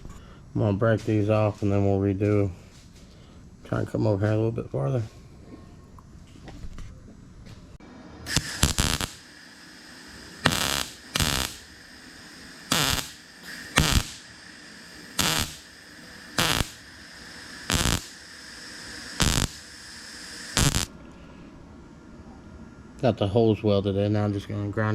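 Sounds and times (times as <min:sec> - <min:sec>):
faint steady hum: 0:00.0 - 0:24.9
welder crackling bursts: 0:08.2 - 0:20.9.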